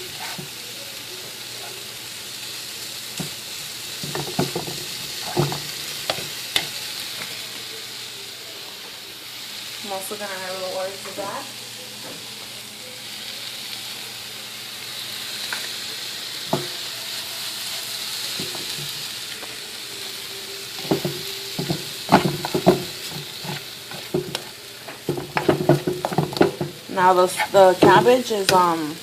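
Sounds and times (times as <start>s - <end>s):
food sizzling in frying pan: 0.0s - 29.0s
utensil knocking against pan: 20.8s - 24.4s, 27.8s - 28.6s.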